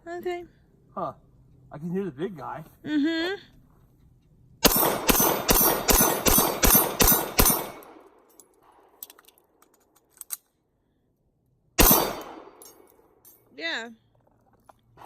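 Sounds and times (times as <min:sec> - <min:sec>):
pistol shots: 0:04.6 - 0:08.1, 0:11.8 - 0:12.7.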